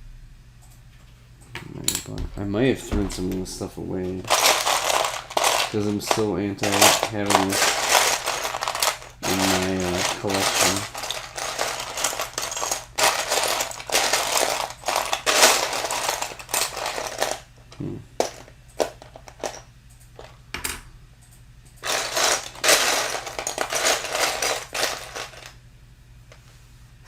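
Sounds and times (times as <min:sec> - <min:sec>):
plastic bricks rattling: 0:04.3 - 0:17.5, 0:21.8 - 0:25.5.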